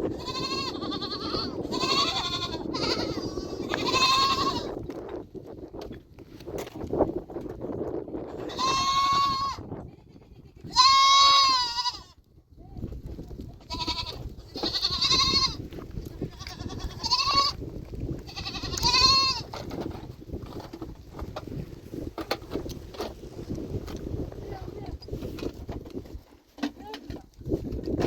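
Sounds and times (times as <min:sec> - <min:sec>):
goats bleating: 0:00.1 - 0:04.8, 0:08.3 - 0:12.1, 0:13.6 - 0:17.6, 0:18.3 - 0:19.5.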